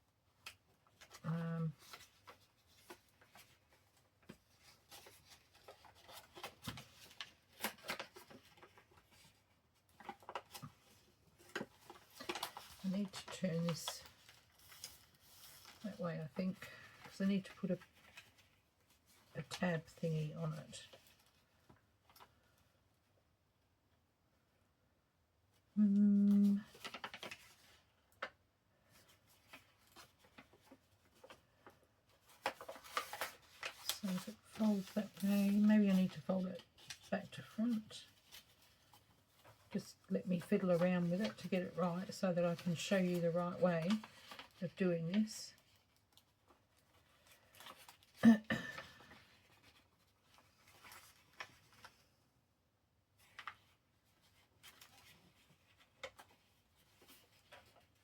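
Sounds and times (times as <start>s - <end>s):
paper rustling: 0.3s - 22.6s, 26.3s - 52.2s, 53.1s - 58.0s.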